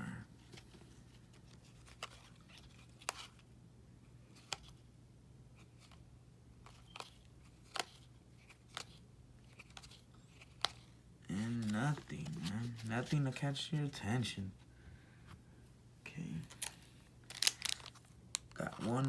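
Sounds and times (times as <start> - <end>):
low steady hum: 0.0 - 19.0
trading cards clicking and snapping: 6.6 - 10.8, 16.5 - 19.0.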